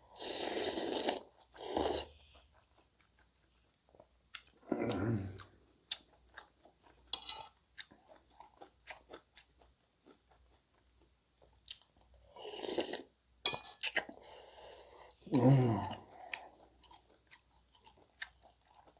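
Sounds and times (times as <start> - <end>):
chewing food with crunches: 1.2 - 13.1, 15.8 - 18.9.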